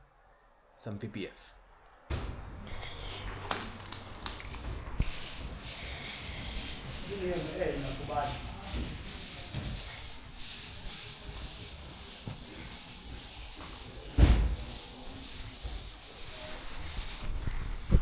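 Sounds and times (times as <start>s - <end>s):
heavy thump: 2.1s - 5.6s, 14.1s - 14.7s
paint scraping off metal: 2.1s - 18.0s.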